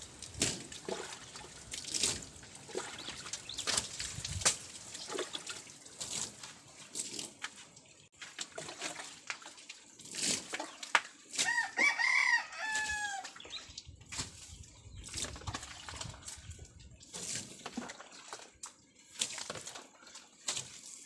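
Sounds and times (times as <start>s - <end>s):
water splashing: 0.0s - 11.6s, 13.2s - 21.0s
rooster crowing: 11.4s - 13.4s.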